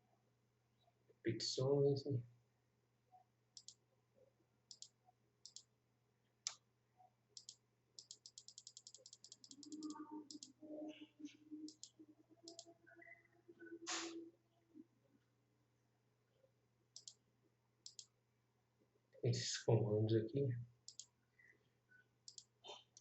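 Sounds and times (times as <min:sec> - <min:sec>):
faint computer mouse clicks: 0:03.6 - 0:03.8, 0:04.7 - 0:05.7, 0:07.4 - 0:10.5, 0:11.7 - 0:12.7, 0:17.0 - 0:17.2, 0:17.8 - 0:18.1, 0:20.9 - 0:21.1, 0:22.3 - 0:23.0.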